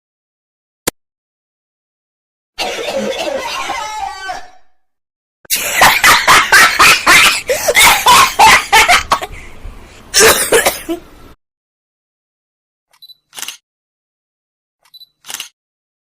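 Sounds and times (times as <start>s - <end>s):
loud harsh coughing: 2.6s - 4.6s, 5.5s - 9.3s, 10.1s - 11.0s.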